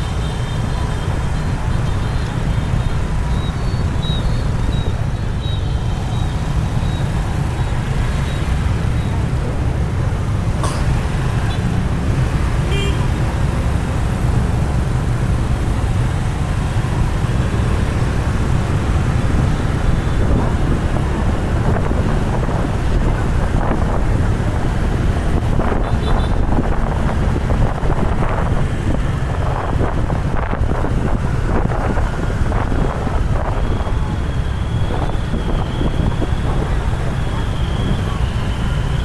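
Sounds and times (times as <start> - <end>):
traffic rumble: 0.0 - 39.0.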